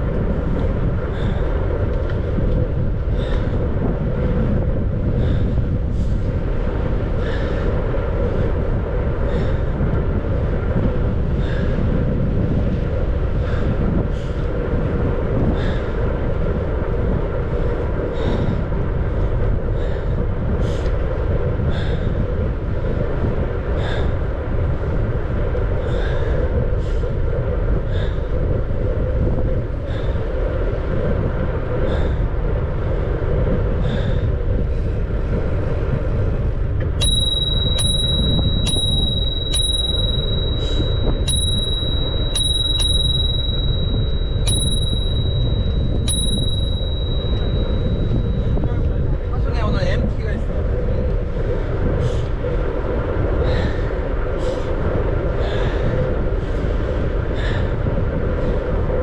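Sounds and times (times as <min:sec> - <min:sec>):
wind rush while cycling: 0:00.0 - 0:59.0
steady high-pitched tone: 0:36.9 - 0:49.1.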